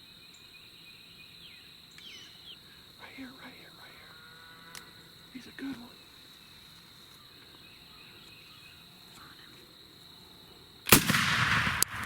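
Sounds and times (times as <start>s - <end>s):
faint high insect buzz: 0.0s - 10.9s
shotgun blast: 10.9s - 12.0s.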